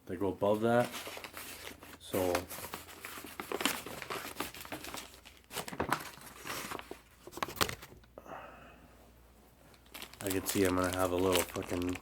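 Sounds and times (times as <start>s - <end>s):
packaging crumpling and tearing: 0.7s - 7.8s, 9.8s - 12.0s.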